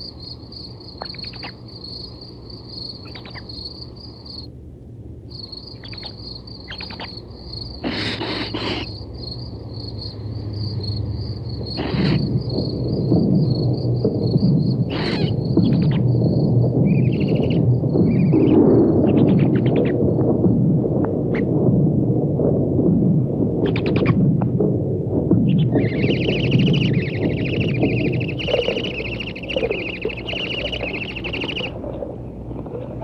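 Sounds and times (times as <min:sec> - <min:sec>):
crickets chirping: 0:00.0 - 0:21.6, 0:23.6 - 0:24.3, 0:25.2 - 0:33.0
low rumbling noise: 0:00.0 - 0:33.0.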